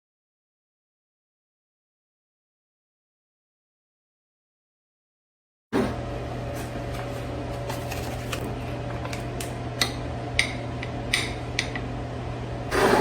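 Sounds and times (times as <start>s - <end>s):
kitchen appliance humming: 5.8s - 13.0s.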